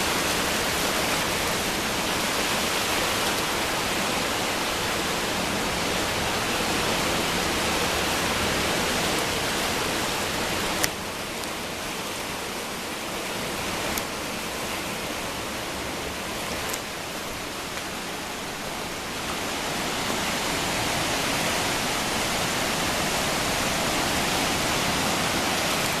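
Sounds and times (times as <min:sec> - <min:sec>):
river rushing: 0:00.0 - 0:26.0.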